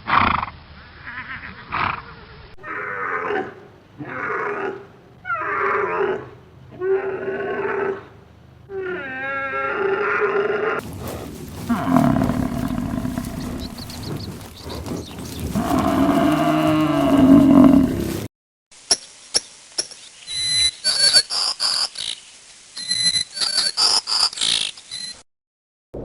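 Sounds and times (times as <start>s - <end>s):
cow mooing: 10.8s - 18.3s.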